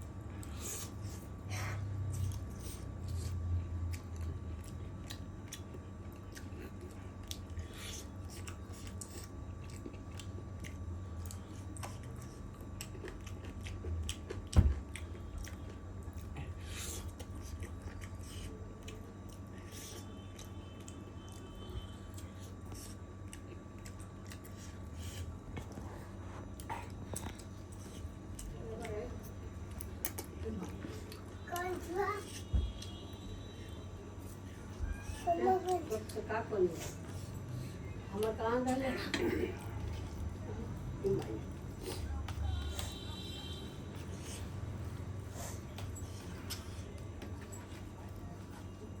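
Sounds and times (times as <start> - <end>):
person chewing food: 0.0 - 36.1.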